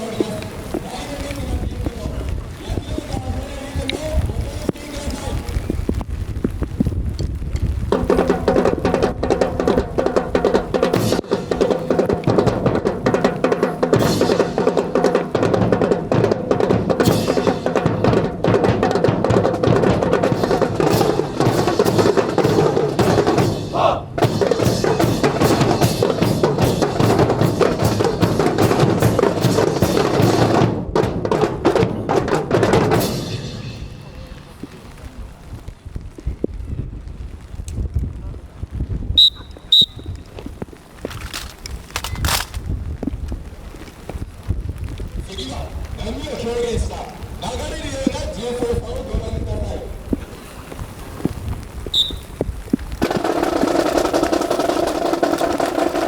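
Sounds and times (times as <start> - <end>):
snare and bass drums: 5.8 - 35.1, 39.2 - 41.4, 46.0 - 56.0
marching band playing: 7.9 - 34.7, 53.0 - 56.0.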